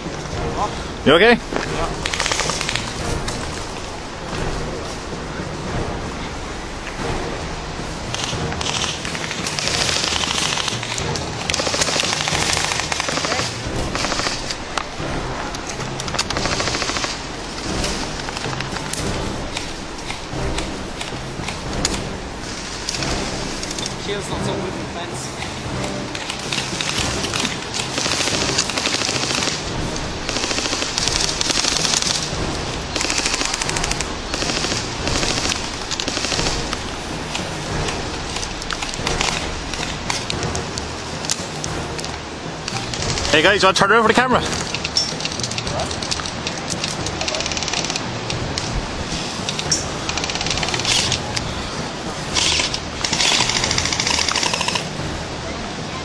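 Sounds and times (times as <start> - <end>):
airsoft guns firing full-auto bursts: 2.1 - 2.8, 9.6 - 10.8, 11.6 - 14.4, 16.4 - 17.2, 26.9 - 29.6, 30.3 - 32.2, 33.0 - 36.7, 52.4 - 54.9.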